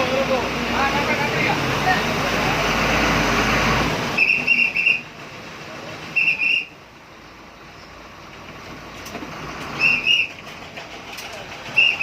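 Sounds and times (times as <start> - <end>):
vehicle running noise: 0.0 - 12.0
shrill whistle blasts: 4.2 - 5.1, 6.2 - 6.8, 9.8 - 10.4, 11.8 - 12.0.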